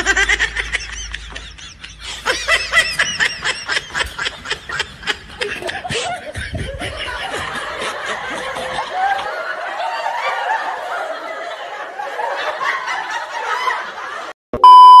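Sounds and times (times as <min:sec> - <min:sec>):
people snickering and laughing: 0:00.0 - 0:14.3.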